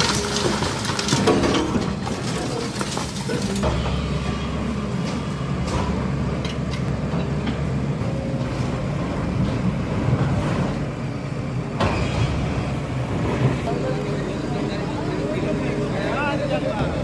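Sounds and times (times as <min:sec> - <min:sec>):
knocks and clatter: 0:00.0 - 0:04.0
bulldozer engine running: 0:00.0 - 0:17.0.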